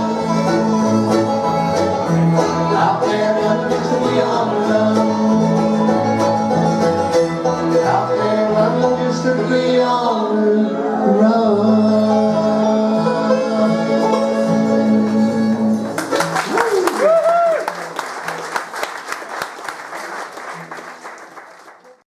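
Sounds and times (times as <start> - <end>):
bass line: 0.0 - 16.0
guitar picking: 0.0 - 16.3
banjo picking: 0.0 - 16.5
bluegrass band playing: 0.0 - 21.7.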